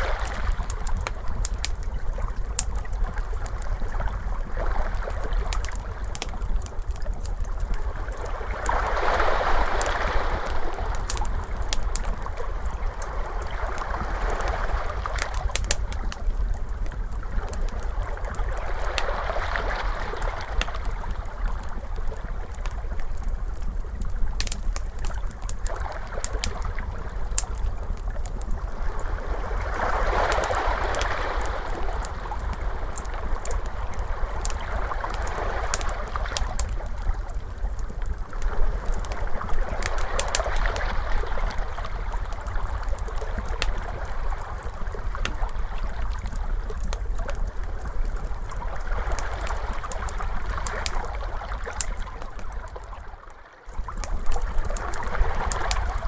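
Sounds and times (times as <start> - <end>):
crackling fire: 0.0 - 56.0
ocean waves washing in: 8.0 - 11.8.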